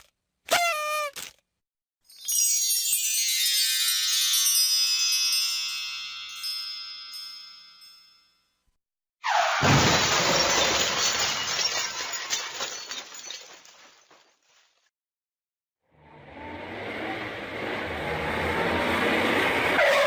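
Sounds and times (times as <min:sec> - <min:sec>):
bright chime ringing: 0:02.1 - 0:08.5
glass breaking and shards tinkling: 0:09.6 - 0:14.4.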